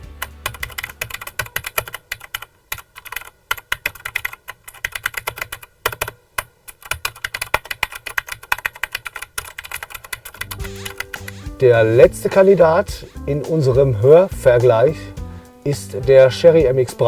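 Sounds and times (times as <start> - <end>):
clicky mechanical keyboard typing: 0.4 - 11.4.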